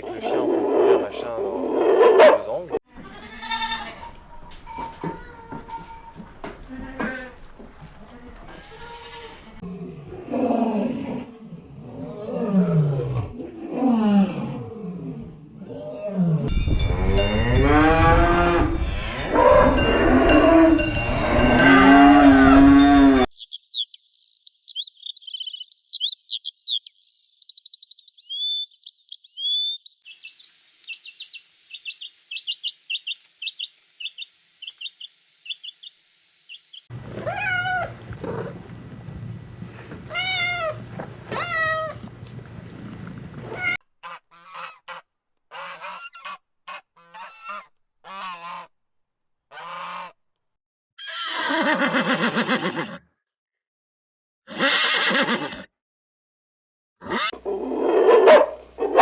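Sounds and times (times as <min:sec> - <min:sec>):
loud low animal calls: 0:00.0 - 0:04.6, 0:36.9 - 0:43.8, 0:57.0 - 0:59.0
pitched animal calls: 0:00.0 - 0:07.5, 0:36.9 - 0:47.6, 0:57.0 - 0:59.0
small birds chirping and trilling: 0:23.3 - 0:43.8.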